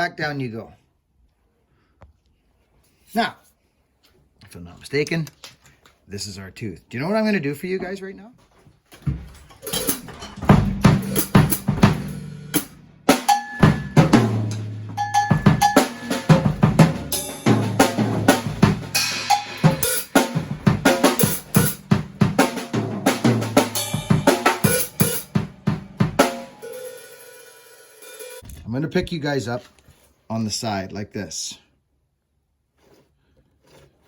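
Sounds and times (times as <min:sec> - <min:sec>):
drum kit beat: 0:09.6 - 0:28.4.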